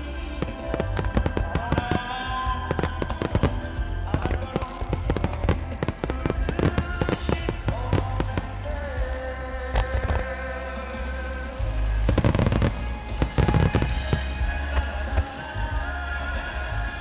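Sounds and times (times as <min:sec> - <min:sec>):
fireworks bursting and crackling: 0:00.0 - 0:09.4, 0:12.0 - 0:15.7
music playing: 0:00.0 - 0:09.4, 0:12.0 - 0:16.4.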